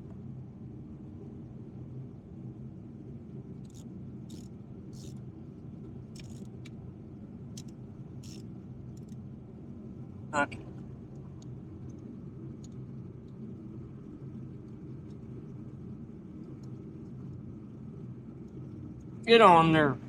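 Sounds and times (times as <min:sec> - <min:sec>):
steady low hum: 0:00.0 - 0:20.0
metallic clicks of hand tools: 0:03.7 - 0:05.2, 0:06.2 - 0:06.6, 0:07.6 - 0:08.4.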